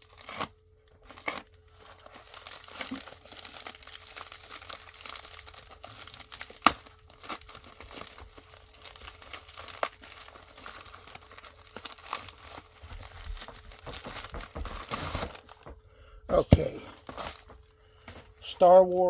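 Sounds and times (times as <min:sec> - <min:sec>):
packaging crinkling and rustling: 0:00.0 - 0:19.0.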